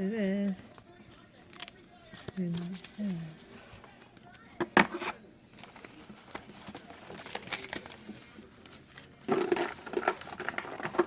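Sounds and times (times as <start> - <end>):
foil wrapper crinkling: 0.0 - 3.4, 5.6 - 11.0
cards being handled: 0.0 - 11.0.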